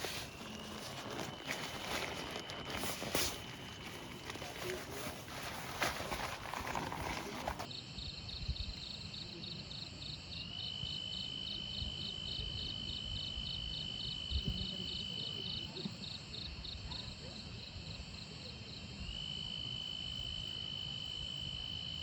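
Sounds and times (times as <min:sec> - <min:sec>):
rustling noise: 0:00.0 - 0:07.7.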